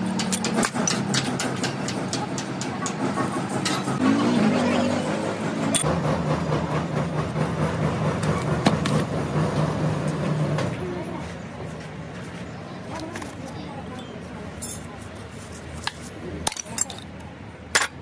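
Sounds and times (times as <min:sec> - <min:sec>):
engine running: 0:00.0 - 0:12.2.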